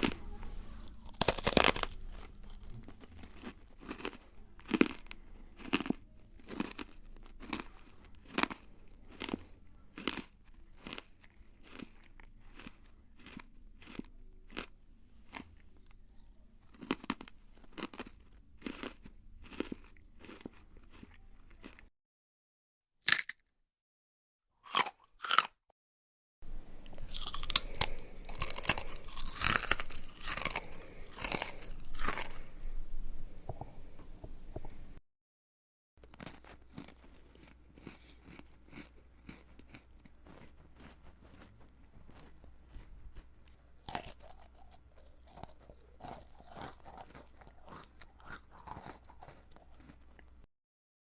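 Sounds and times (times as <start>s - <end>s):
crunchy food chewing: 0.0s - 21.9s, 23.1s - 23.4s, 24.6s - 25.6s, 26.8s - 33.8s, 36.0s - 50.5s
sharp crunching bites: 1.0s - 5.0s, 5.6s - 14.6s, 23.0s - 23.4s, 24.6s - 25.6s, 27.0s - 32.5s, 43.8s - 50.0s.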